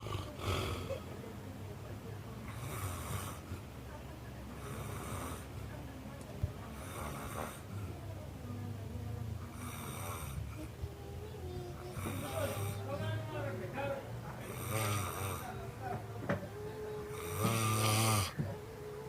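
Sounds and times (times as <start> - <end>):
low steady hum: 0.0 - 19.0
person snoring: 14.4 - 15.5, 17.0 - 18.4.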